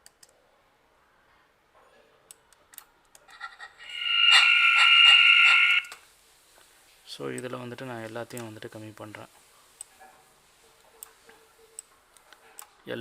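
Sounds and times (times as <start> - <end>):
pulsing buzzing alarm tone: 3.9 - 6.0.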